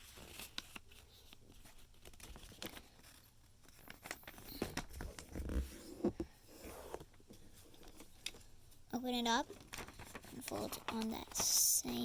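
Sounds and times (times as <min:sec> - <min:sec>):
paper rustling and crinkling: 0:00.0 - 0:06.0, 0:09.4 - 0:12.0.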